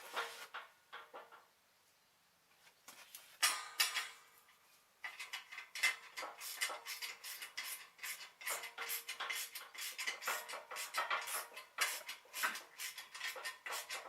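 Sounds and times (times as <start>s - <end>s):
metal tools clinking: 3.4s - 4.3s.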